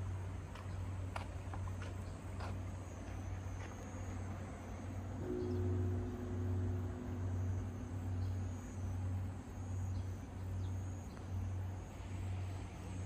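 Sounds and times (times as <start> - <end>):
large temple bell humming: 4.7 - 12.2.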